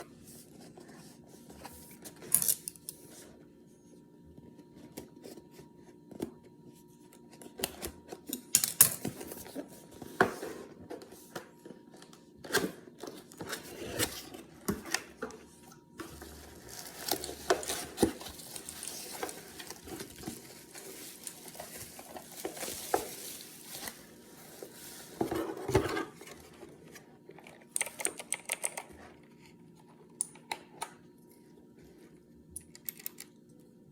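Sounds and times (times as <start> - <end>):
cardboard and plastic rustling: 9.0 - 27.7.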